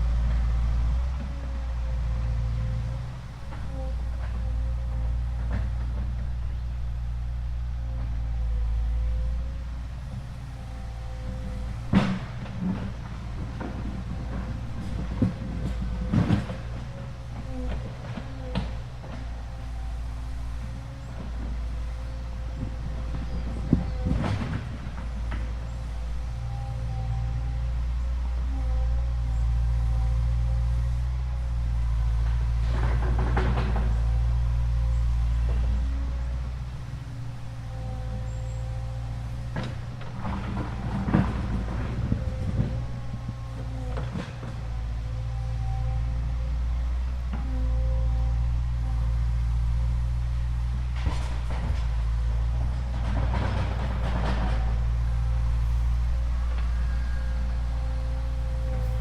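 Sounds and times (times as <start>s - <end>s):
rattling clatter: 2.2s - 59.0s
small motor humming: 54.6s - 59.0s.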